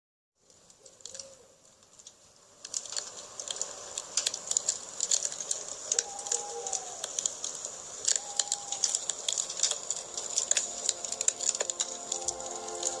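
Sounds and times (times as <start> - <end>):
campfire crackling and popping: 0.4 - 13.0
faint low bird call: 8.1 - 9.0.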